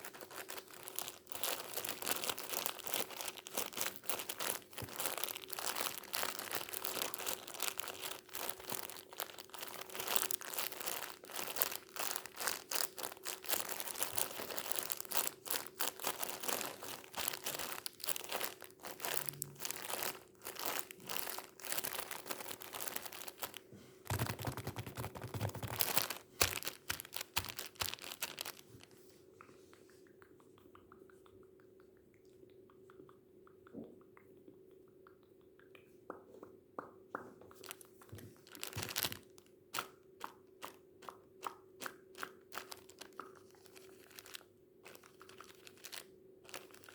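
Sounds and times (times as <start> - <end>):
tissue paper crumpling: 0.0 - 29.1, 37.6 - 39.3, 42.5 - 46.9
faint steady hum: 0.0 - 46.9.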